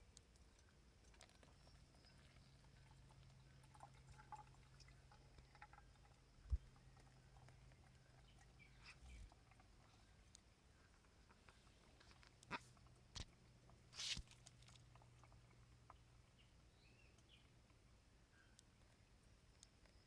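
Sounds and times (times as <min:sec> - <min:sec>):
faint low hum: 0:00.0 - 0:20.0
soft ticks: 0:10.3 - 0:10.5, 0:18.5 - 0:20.0.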